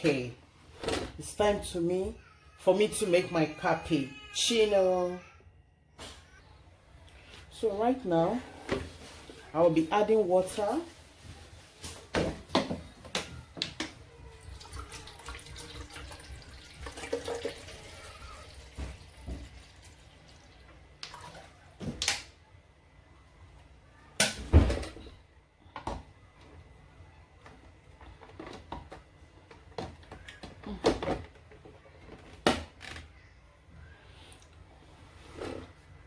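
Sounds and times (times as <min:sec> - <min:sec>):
water running into plastic tank: 0:14.4 - 0:21.6.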